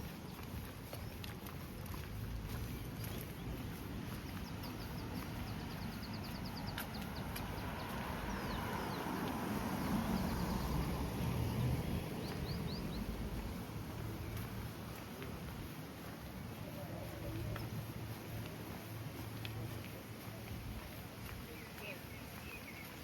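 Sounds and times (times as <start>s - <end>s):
small bird chirping: 2.5s - 9.1s.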